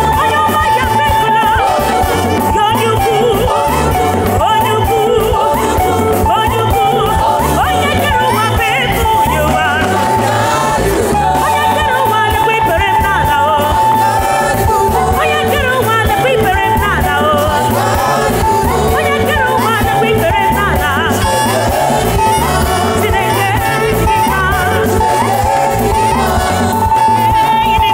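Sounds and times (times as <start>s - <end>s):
repeating bass line: 0.0s - 27.9s.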